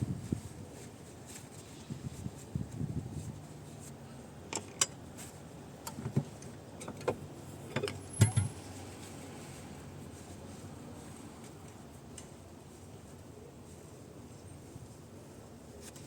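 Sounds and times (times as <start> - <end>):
metallic clicks and knocks: 6.8 - 8.6.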